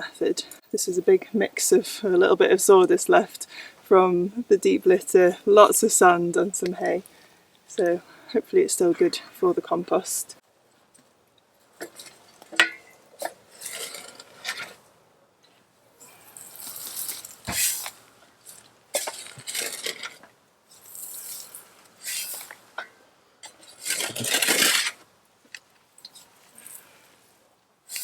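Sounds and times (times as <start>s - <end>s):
shovel scraping sand: 16.2s - 22.7s, 23.4s - 25.0s.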